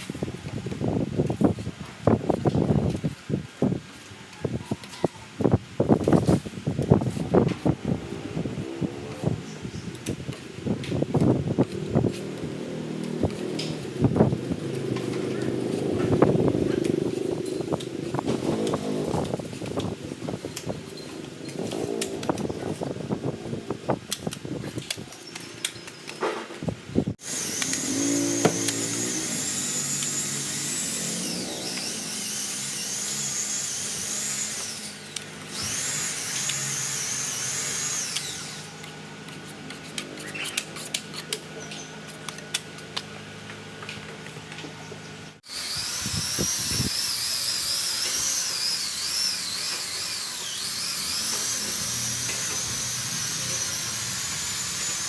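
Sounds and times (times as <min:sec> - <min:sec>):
power sander whine: 0:27.2 - 0:40.8, 0:45.4 - 0:55.0.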